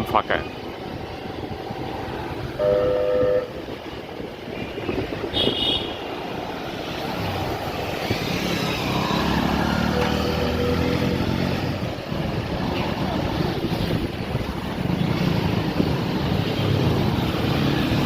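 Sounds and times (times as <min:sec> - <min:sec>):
vehicle engines passing: 0:00.0 - 0:18.0
high-pitched horn beep: 0:02.6 - 0:03.5.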